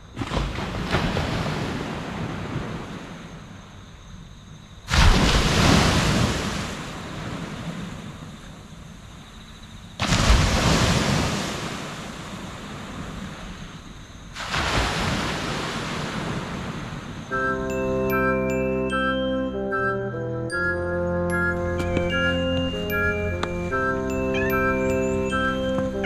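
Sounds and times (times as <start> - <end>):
ocean waves breaking on shore: 0.0 - 3.8, 4.9 - 9.1, 10.0 - 18.2
chiming mallet instrument music: 17.4 - 26.0.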